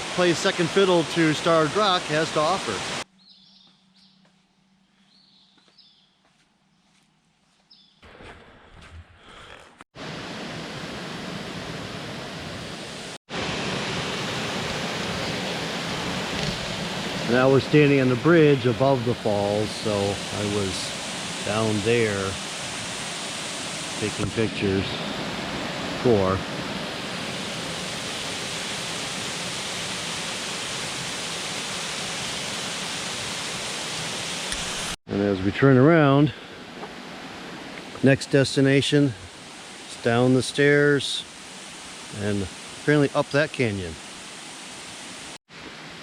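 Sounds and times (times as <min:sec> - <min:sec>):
waterfall roaring: 0:00.0 - 0:03.0, 0:10.0 - 0:35.0.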